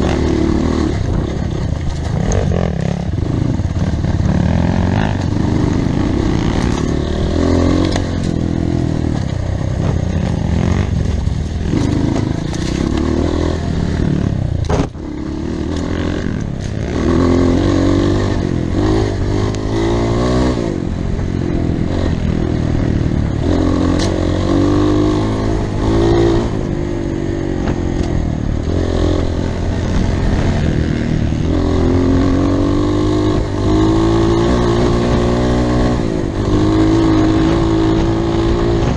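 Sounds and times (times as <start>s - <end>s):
clatter and scraping: 0.0s - 17.2s
motorcycle engine revving: 0.0s - 38.9s.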